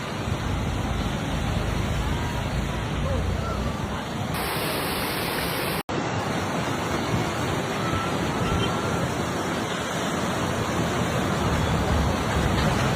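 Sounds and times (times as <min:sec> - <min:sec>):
floodwater rushing roar: 0:00.0 - 0:12.9.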